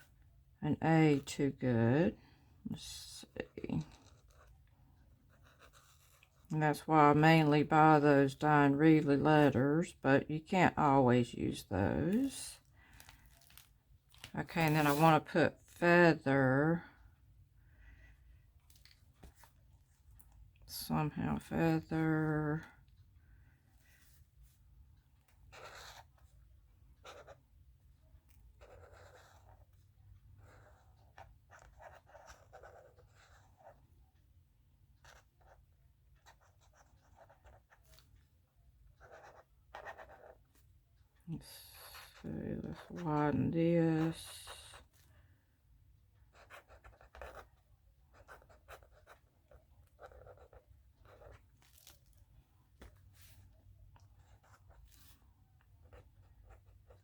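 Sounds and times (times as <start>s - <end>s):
pen scratching on paper: 2.8s - 4.6s, 5.2s - 8.3s, 14.4s - 15.6s, 25.3s - 26.4s, 27.0s - 27.5s, 28.3s - 29.8s, 30.4s - 33.8s, 35.0s - 38.2s, 38.9s - 40.7s, 41.4s - 45.0s, 46.2s - 52.0s, 52.8s - 55.2s, 55.8s - 57.0s.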